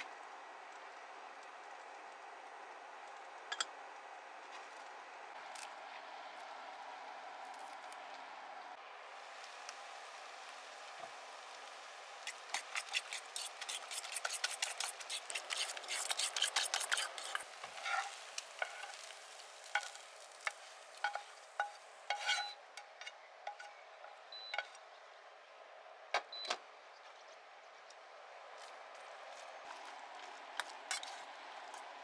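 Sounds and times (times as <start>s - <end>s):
food sizzling in a frying pan: 9.1s - 22.6s.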